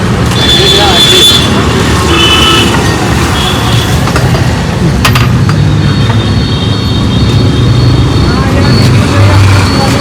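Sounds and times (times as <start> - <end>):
road and wind noise: 0.0 - 10.0
high traffic beeps: 5.6 - 10.0.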